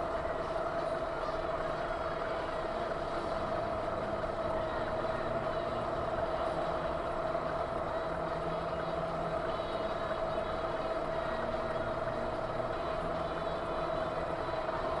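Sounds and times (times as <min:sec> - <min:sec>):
vehicle engine and road hum: 0:00.0 - 0:15.0.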